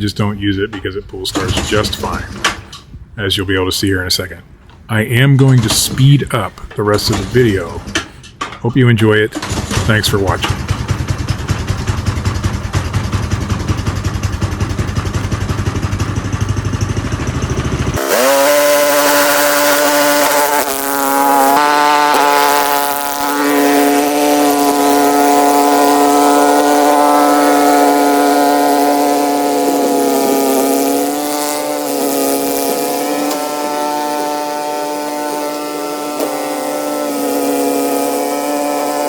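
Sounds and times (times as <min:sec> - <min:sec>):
snowblower engine pulsing: 0:09.4 - 0:39.0
high buzzing engine whine: 0:10.4 - 0:39.0.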